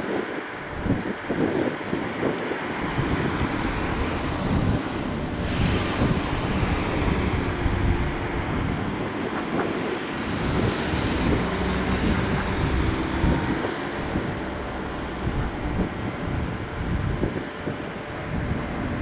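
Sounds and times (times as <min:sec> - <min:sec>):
jet engines running: 0:00.0 - 0:19.0
wind buffeting microphone: 0:00.0 - 0:19.0.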